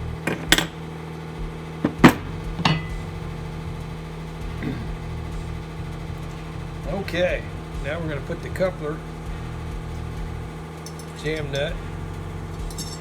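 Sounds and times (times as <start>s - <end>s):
steady low hum: 0.0s - 13.0s
hand tools knocking and clinking: 0.3s - 0.8s, 1.8s - 3.1s, 10.8s - 11.7s, 12.6s - 13.0s.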